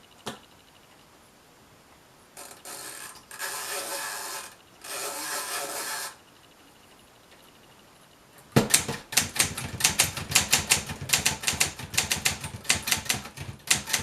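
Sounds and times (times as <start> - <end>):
typewriter click: 8.6 - 14.0
typewriter mechanism ratcheting: 8.7 - 14.0.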